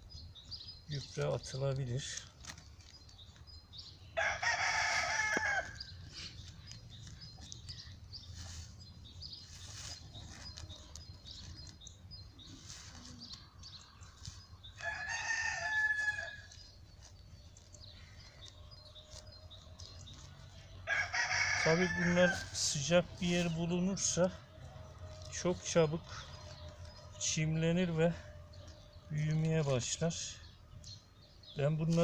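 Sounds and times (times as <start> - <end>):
rooster crowing: 4.2 - 5.8, 14.8 - 16.4, 20.8 - 22.4.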